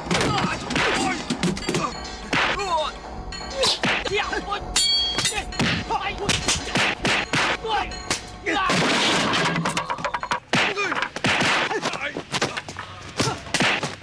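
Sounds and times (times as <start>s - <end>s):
sharp hits and thuds: 0.0s - 2.7s, 3.8s - 4.2s, 5.1s - 12.6s, 13.2s - 14.0s
action film music: 0.0s - 8.8s
crashing noise: 5.2s - 11.8s.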